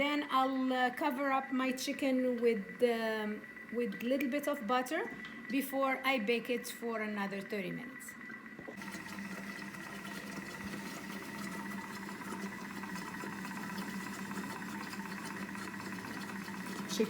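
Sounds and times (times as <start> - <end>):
kitchen appliance motor humming: 8.2 - 17.0.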